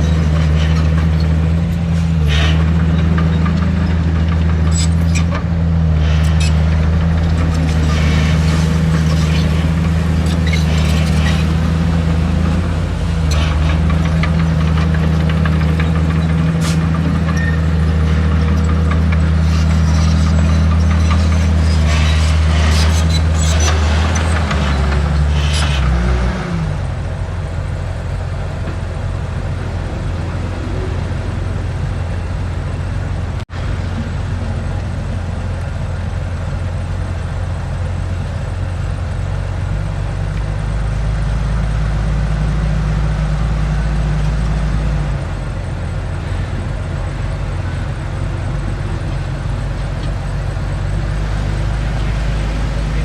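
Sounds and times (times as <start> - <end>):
squeaks and clatter: 0.0 - 26.1
diesel machinery engine running: 0.0 - 53.0.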